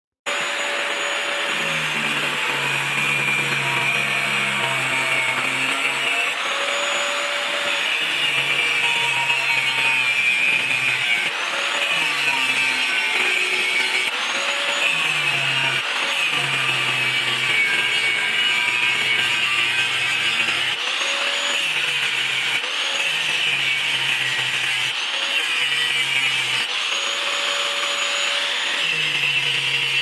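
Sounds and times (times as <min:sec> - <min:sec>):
power tool grinding steel: 0:00.3 - 0:30.0.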